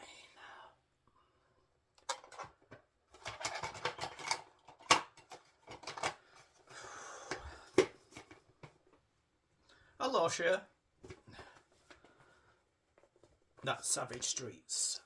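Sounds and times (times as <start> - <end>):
plastic cassette clicks and rattles: 2.0 - 6.6.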